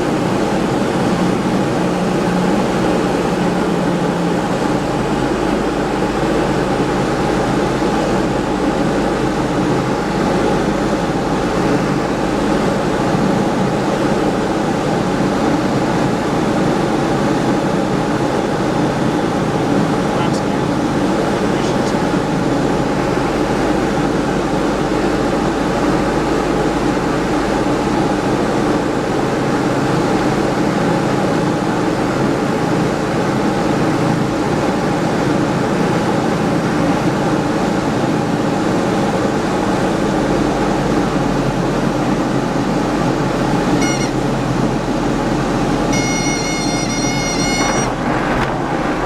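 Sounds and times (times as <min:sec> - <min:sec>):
aircraft engine and propeller drone: 0:00.0 - 0:49.0
brief high tone: 0:43.8 - 0:44.3, 0:45.8 - 0:48.5.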